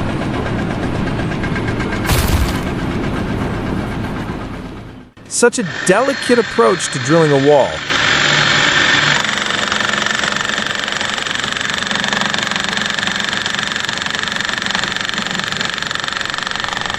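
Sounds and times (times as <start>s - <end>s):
hammer drill rattling: 7.9s - 16.9s.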